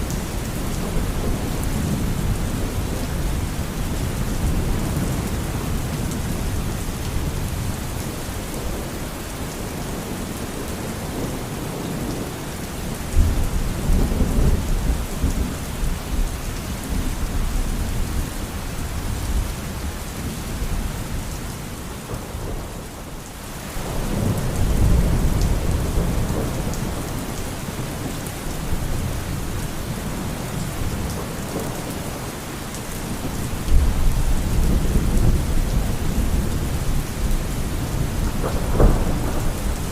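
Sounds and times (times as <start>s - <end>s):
steady rain: 0.0s - 39.9s
rolling thunder: 33.2s - 39.9s.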